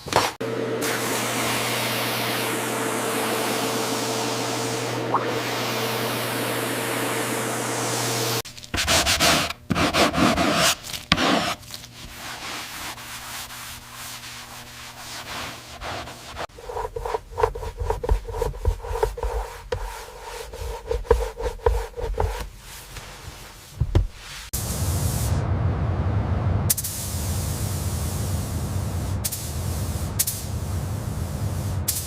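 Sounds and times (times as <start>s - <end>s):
steady hum: 0.4s - 8.4s, 11.6s - 32.0s
sanding strokes on a surface: 8.8s - 24.5s.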